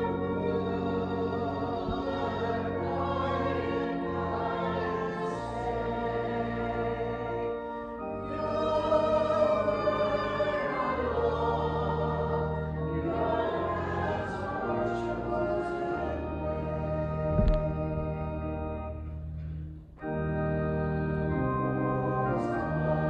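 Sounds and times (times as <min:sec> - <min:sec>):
church organ chords: 0:00.0 - 0:23.0
hymn singing: 0:00.0 - 0:23.0
brief knock: 0:17.3 - 0:18.1.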